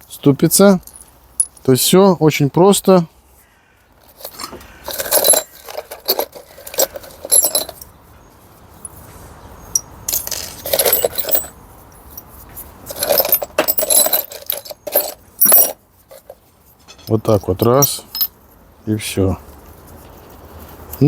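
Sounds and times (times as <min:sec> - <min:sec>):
metal tools clinking: 0:00.5 - 0:01.9, 0:04.0 - 0:07.9, 0:09.7 - 0:18.6.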